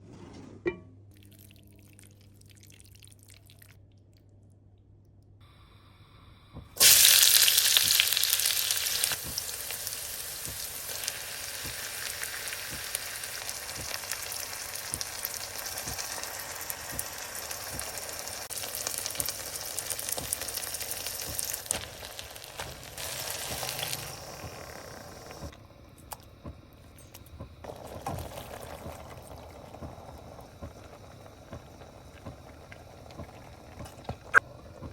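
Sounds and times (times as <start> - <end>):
crackling oil pops: 6.6 - 34.9
food sizzling in hot oil: 6.8 - 25.5, 27.6 - 34.5.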